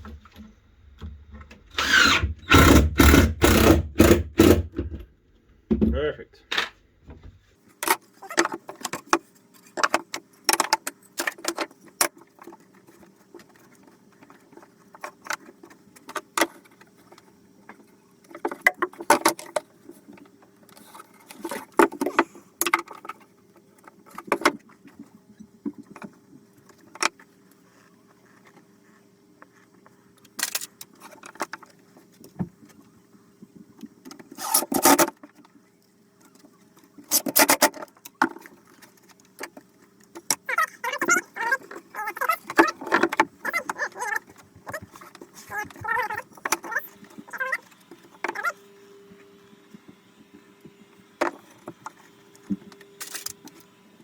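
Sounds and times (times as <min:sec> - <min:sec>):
tools and metal parts handled: 0:53.0 - 0:53.6.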